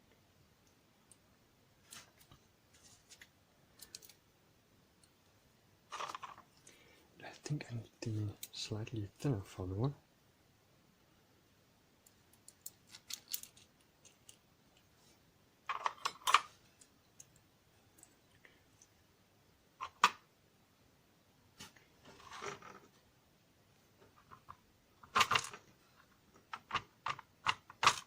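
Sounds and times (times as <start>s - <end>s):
small metal parts clicking: 3.8s - 4.2s, 12.1s - 14.4s.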